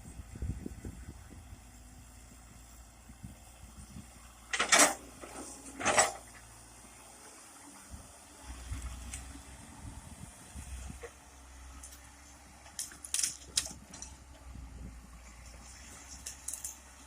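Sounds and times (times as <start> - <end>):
excavator engine rumble: 0.0 - 17.0.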